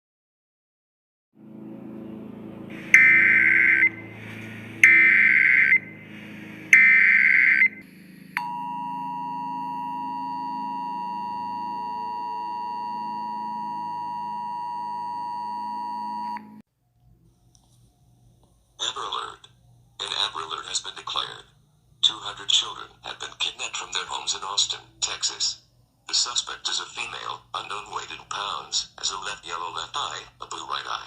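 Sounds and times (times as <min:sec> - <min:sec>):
low hum: 0:01.4 - 0:18.8
two-tone attention signal: 0:02.7 - 0:04.1, 0:04.8 - 0:06.0, 0:06.7 - 0:07.8, 0:08.4 - 0:16.6
screechy data header bursts: 0:02.7 - 0:05.9, 0:06.7 - 0:07.8.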